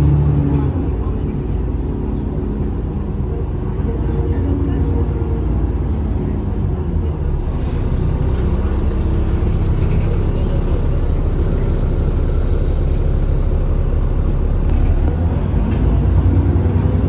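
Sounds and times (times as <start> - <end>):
bus engine rumbling: 0.0 - 17.0
high whine: 7.2 - 15.2.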